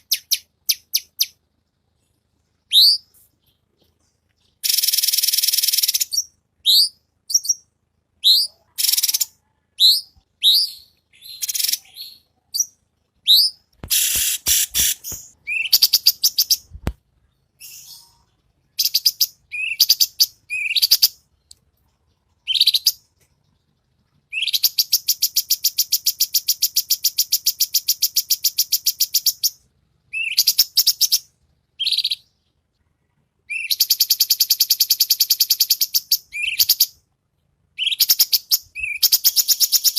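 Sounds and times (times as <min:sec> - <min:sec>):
bird singing whistled notes: 0:02.6 - 0:03.6, 0:04.5 - 0:16.8, 0:17.6 - 0:21.2, 0:24.3 - 0:32.3, 0:33.5 - 0:37.0, 0:37.8 - 0:39.9
sharp clicks: 0:13.7 - 0:15.4.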